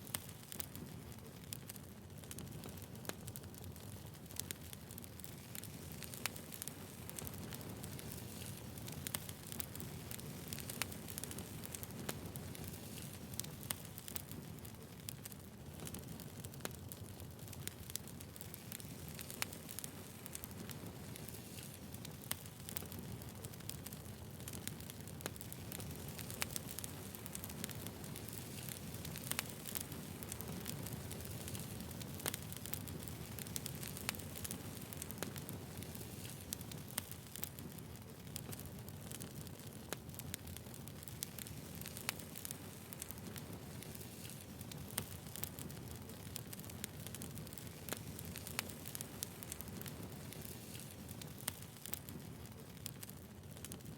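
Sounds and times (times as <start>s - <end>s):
burning wood crackling and popping: 0.0s - 53.9s
campfire hissing: 0.1s - 53.8s
flames rumbling: 0.1s - 53.9s.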